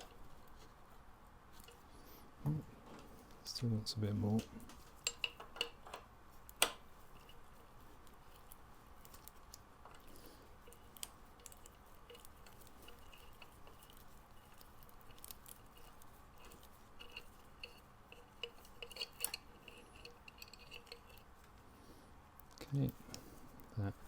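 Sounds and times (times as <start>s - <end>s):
hand tools clicking and clinking: 5.0s - 6.0s, 8.3s - 21.3s.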